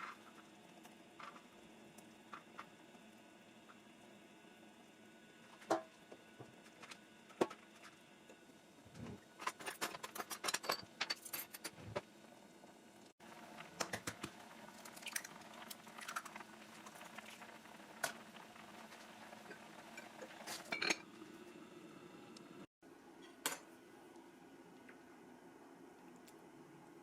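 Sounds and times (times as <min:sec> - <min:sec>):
utensils and dishes clinking: 0:09.4 - 0:12.0, 0:19.4 - 0:21.1.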